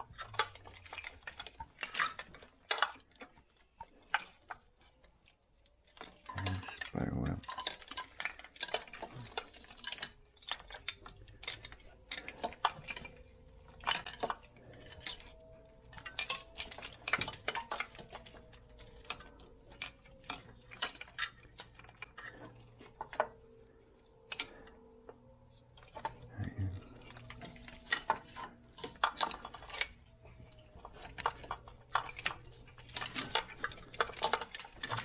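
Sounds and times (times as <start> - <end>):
metal tools clinking: 30.8 - 35.0.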